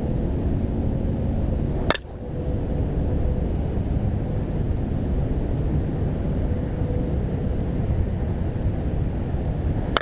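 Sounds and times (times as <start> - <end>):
wind on microphone: 0.0 - 10.0
bat hitting ball: 1.8 - 2.1.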